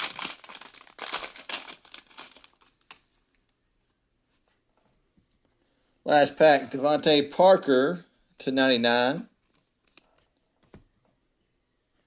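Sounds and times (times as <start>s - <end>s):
foil wrapper tearing and crinkling: 0.0s - 3.0s.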